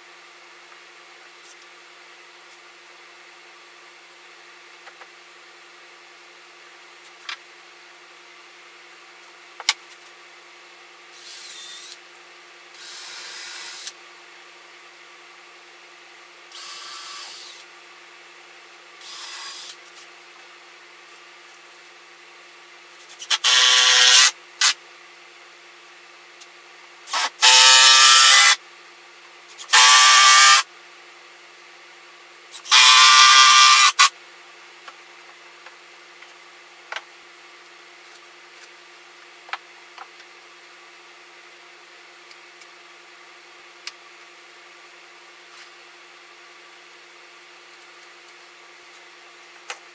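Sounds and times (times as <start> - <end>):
power drill whining: 12.8 - 13.9, 16.6 - 17.6, 19.0 - 19.7, 23.4 - 24.3, 27.1 - 28.6, 29.7 - 30.6.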